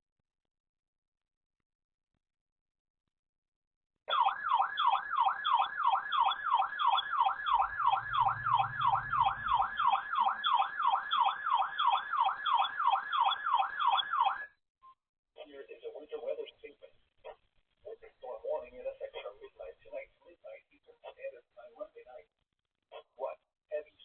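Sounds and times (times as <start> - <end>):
warbling siren alarm: 4.1 - 14.6.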